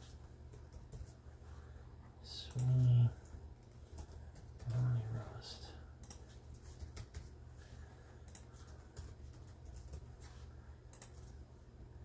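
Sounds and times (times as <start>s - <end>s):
low room hum: 0.0s - 12.0s
typing on computer keyboard: 3.6s - 5.1s, 6.0s - 7.4s, 8.2s - 11.4s.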